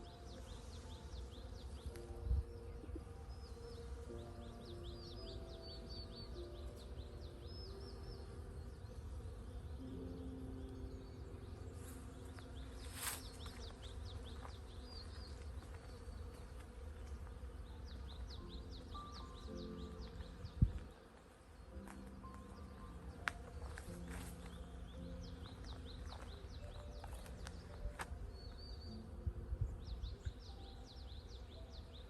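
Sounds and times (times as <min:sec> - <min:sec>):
bees buzzing: 0:00.0 - 0:32.0
birds chirping: 0:00.0 - 0:32.0
soft piano notes: 0:00.0 - 0:32.0.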